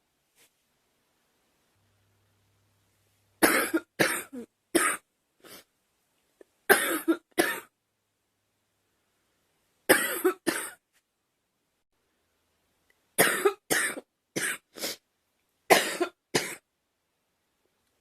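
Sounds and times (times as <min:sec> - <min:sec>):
young woman coughing: 0:03.4 - 0:05.0, 0:06.7 - 0:07.7, 0:09.9 - 0:10.8, 0:13.2 - 0:14.7, 0:15.7 - 0:16.6.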